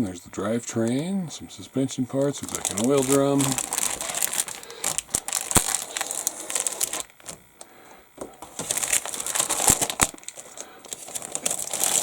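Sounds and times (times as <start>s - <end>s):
plastic packaging crinkling: 2.1s - 7.6s, 8.2s - 12.0s.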